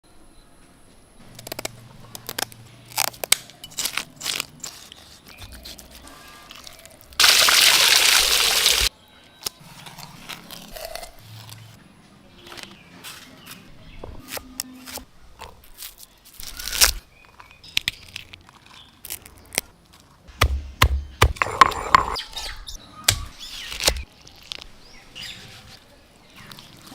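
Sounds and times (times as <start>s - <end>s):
fish splashing in water: 7.2s - 8.9s.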